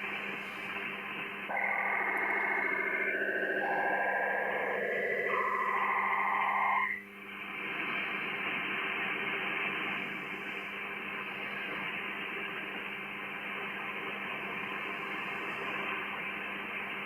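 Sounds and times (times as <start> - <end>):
radio static hiss: 0.0 - 17.0
warbling data tones: 1.5 - 7.1.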